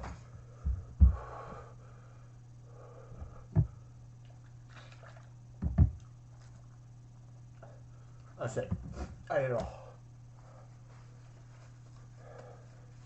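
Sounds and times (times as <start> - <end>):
dull low thumps: 0.6 - 1.3, 3.2 - 3.8.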